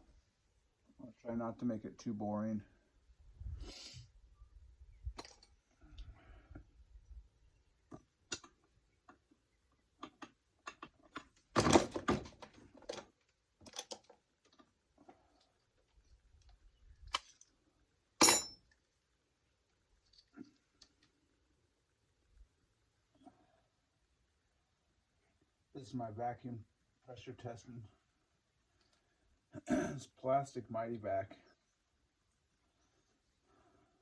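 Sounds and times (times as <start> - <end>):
tools clattering on workbench: 18.2 - 18.6.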